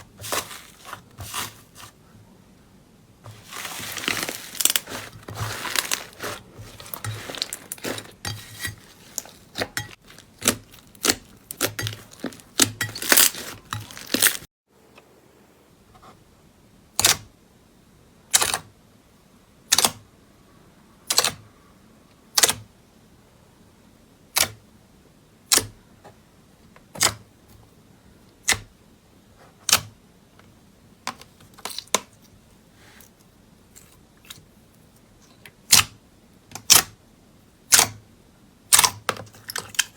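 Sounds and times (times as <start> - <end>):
slime crackling wetly: 3.3 - 14.5
sharp slime pops: 37.7 - 38.0, 38.7 - 39.0.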